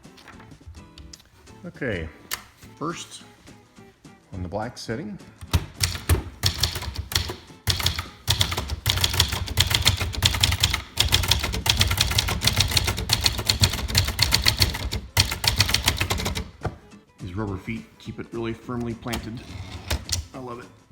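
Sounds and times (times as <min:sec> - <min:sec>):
typewriter keystroke clacks: 0:05.5 - 0:16.6.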